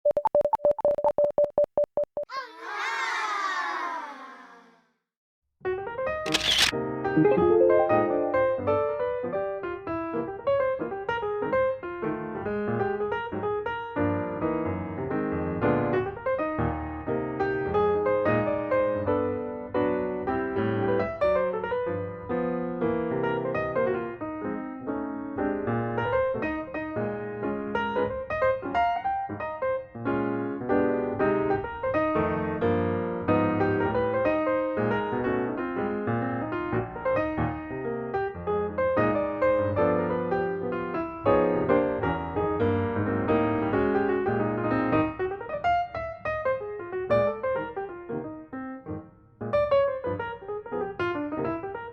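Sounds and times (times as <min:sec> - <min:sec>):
piano music: 0:07.2 - 0:09.6.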